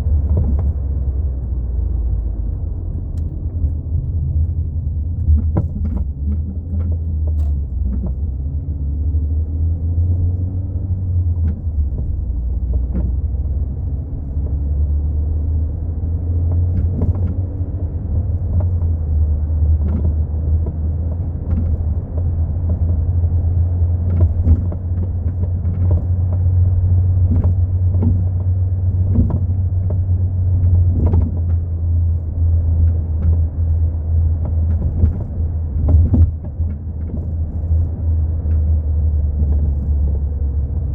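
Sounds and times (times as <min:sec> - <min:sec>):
car interior low rumble: 0:00.0 - 0:40.9
shock absorber knocks and clunks: 0:00.1 - 0:01.9, 0:02.5 - 0:08.3, 0:18.2 - 0:32.2, 0:32.8 - 0:40.5.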